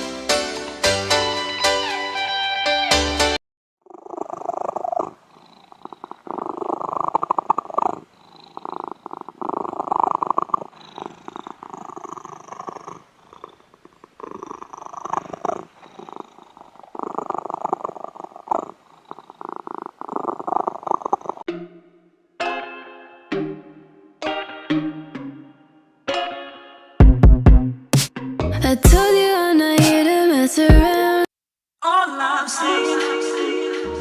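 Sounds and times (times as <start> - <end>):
cat purring: 3.8 - 21.5.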